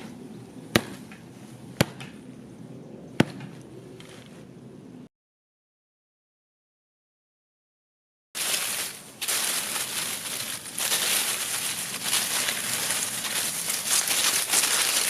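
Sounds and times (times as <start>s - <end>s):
hissy crinkling and crackling: 8.4s - 15.0s.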